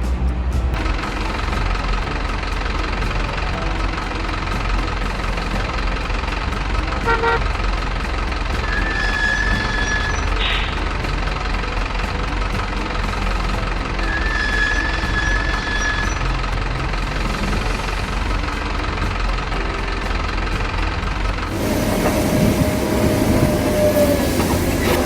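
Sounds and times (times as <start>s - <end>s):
horn toots: 4.8s - 11.6s.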